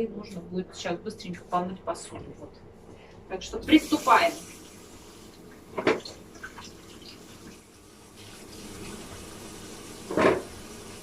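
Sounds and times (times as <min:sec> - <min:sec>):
tap water running into sink: 0:03.7 - 0:11.0
dishes clattering: 0:05.8 - 0:06.2, 0:10.1 - 0:10.5.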